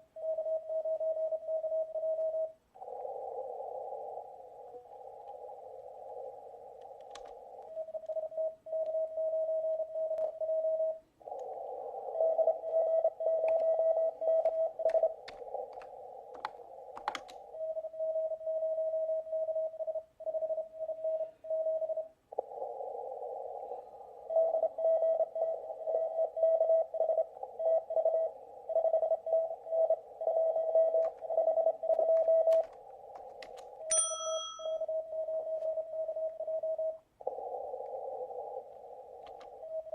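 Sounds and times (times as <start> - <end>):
sharp clicks: 6.8 - 8.2, 13.4 - 17.5, 30.9 - 33.9, 39.2 - 39.6
morse code tone: 28.0 - 32.8, 33.9 - 35.7.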